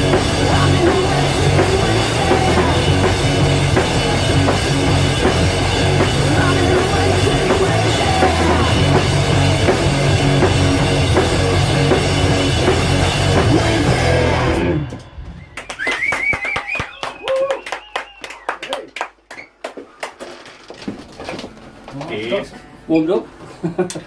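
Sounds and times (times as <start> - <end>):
rock band playing live: 0.0 - 15.4
hand claps: 15.6 - 20.4.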